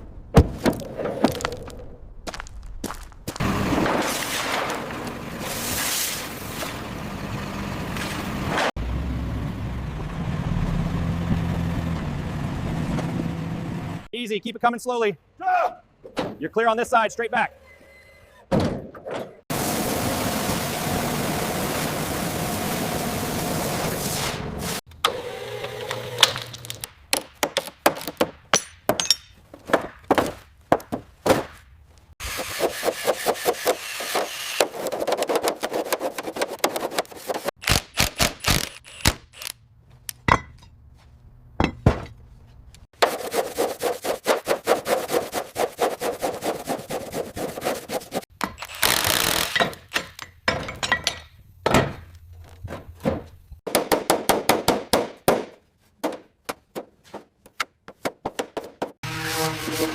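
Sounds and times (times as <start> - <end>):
rapid back-and-forth strokes: 43.0 - 48.2
tool rasping: 43.0 - 49.7.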